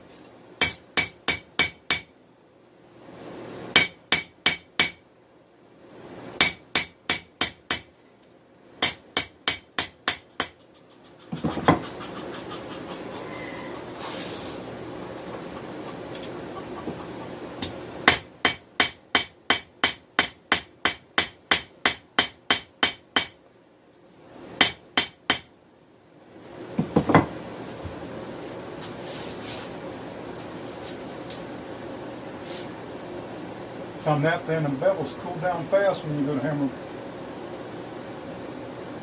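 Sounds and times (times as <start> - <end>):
hammer striking steel on anvil: 0.6 - 2.1, 3.7 - 5.0, 6.4 - 7.9, 8.8 - 10.6, 17.6 - 23.4, 24.6 - 25.5.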